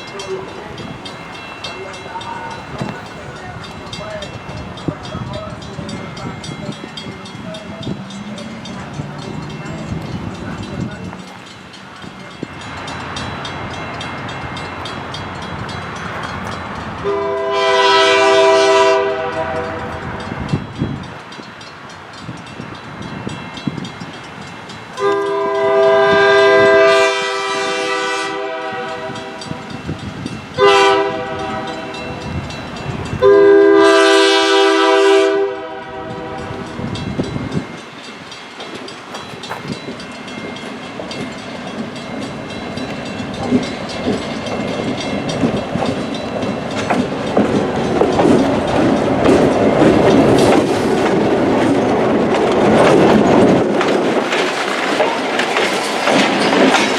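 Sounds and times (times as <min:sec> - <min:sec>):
train passing rumble: 0:00.0 - 0:56.9
locomotive air horn: 0:17.0 - 0:20.2, 0:25.0 - 0:29.4, 0:30.6 - 0:32.0, 0:33.2 - 0:36.6.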